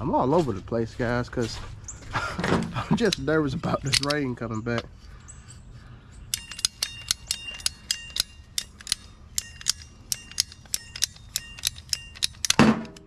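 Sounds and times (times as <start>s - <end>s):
ratchet pipe cutter clicking: 3.0s - 4.9s, 6.2s - 13.0s.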